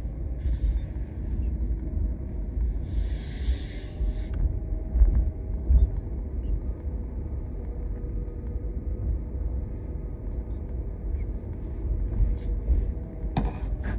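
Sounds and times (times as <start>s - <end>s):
faint high-pitched blips: 0.5s - 3.3s, 5.6s - 8.6s, 10.3s - 13.5s.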